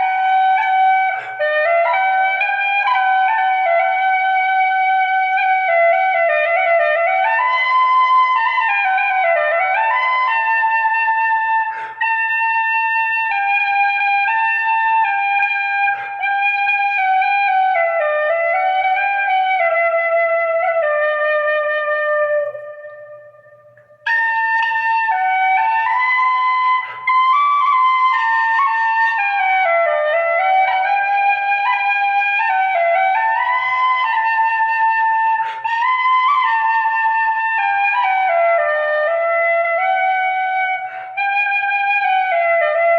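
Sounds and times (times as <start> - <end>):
flute playing slow melody: 0.0 - 42.9.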